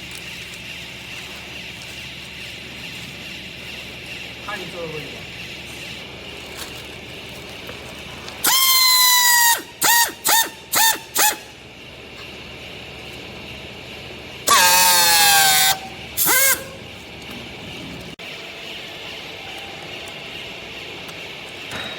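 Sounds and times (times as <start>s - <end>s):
horn honking: 14.5s - 16.8s.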